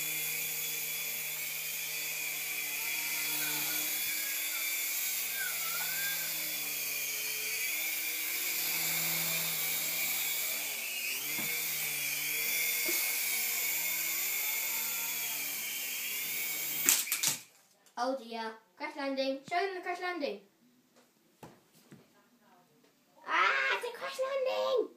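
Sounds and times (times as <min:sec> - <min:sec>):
toy helicopter motor whining: 0:00.0 - 0:17.4.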